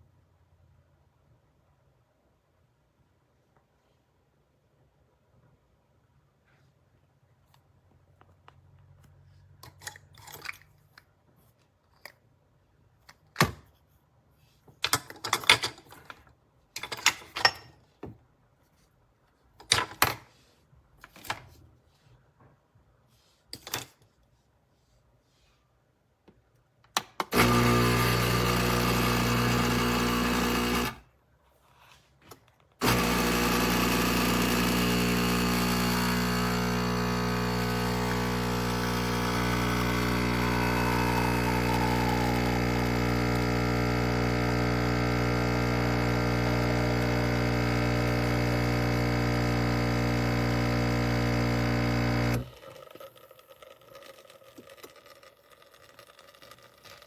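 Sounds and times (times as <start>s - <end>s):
espresso machine pump buzzing: 27.3s - 31.0s, 32.8s - 55.0s.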